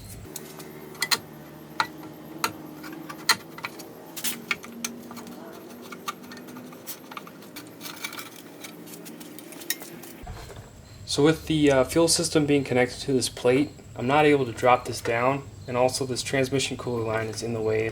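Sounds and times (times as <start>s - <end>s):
steady low hum: 0.0s - 17.9s
tools clinking on metal: 1.0s - 10.2s.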